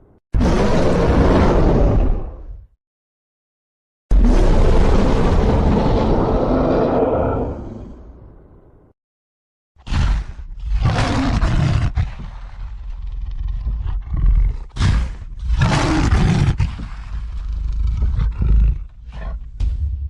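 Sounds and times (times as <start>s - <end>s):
harsh roars: 0.4s - 2.6s, 4.1s - 8.2s, 9.9s - 12.8s, 13.4s - 19.4s.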